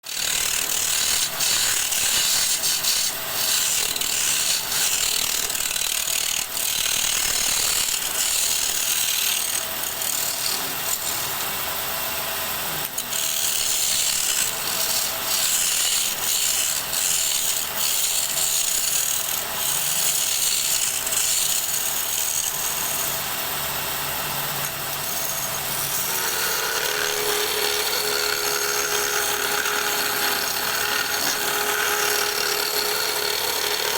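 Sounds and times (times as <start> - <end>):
lathe tool scraping wood: 0.0 - 33.9.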